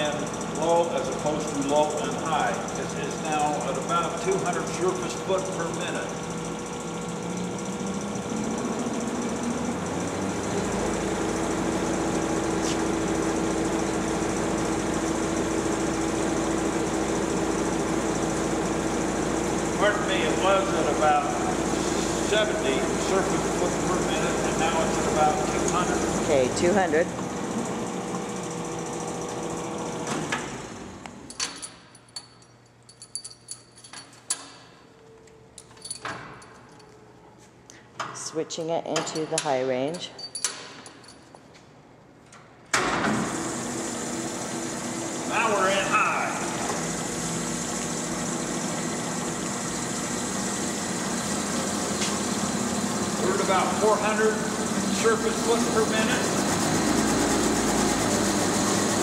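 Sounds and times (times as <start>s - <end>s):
band saw running: 0.0s - 30.9s, 43.0s - 59.0s.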